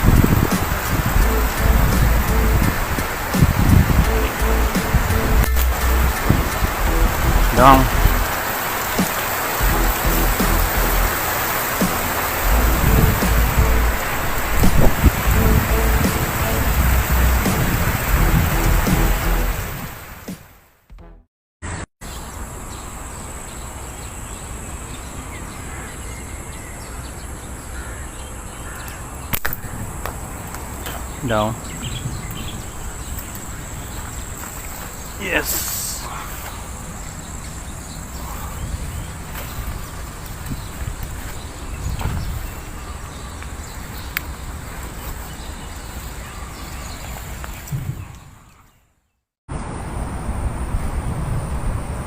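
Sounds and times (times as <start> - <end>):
low outdoor rumble: 1.2 - 2.8, 4.0 - 8.4, 12.4 - 14.1, 15.2 - 19.6
slingshot snap: 29.3 - 29.7
sharp click: 29.3 - 30.2
faint bird calls: 38.0 - 39.9.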